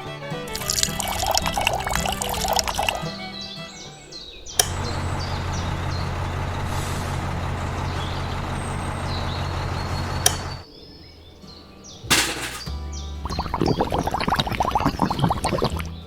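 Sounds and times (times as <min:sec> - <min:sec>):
click: 0:04.5 - 0:06.1, 0:10.1 - 0:10.6
vehicle engine running: 0:04.6 - 0:10.6.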